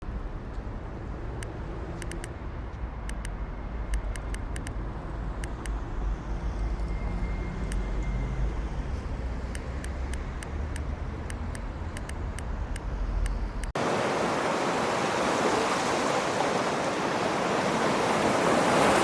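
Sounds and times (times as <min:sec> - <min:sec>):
road traffic rumble: 0:00.1 - 0:19.0
short clicks: 0:01.4 - 0:02.3, 0:03.1 - 0:04.8, 0:05.4 - 0:05.8, 0:09.6 - 0:13.8.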